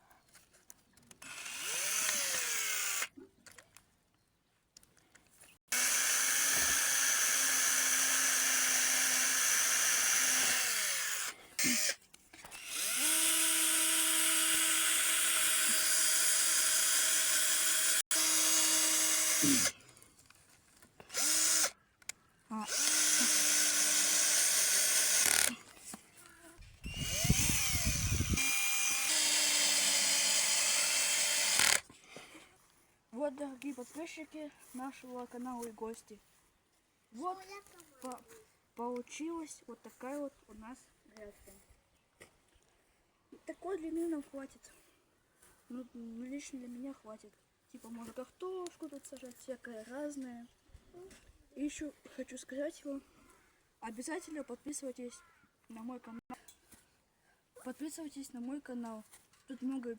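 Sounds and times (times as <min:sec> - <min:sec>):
drill-driver driving screws into wood: 0:01.1 - 0:03.1, 0:05.7 - 0:19.7, 0:21.0 - 0:21.8, 0:22.7 - 0:25.6, 0:26.8 - 0:31.8.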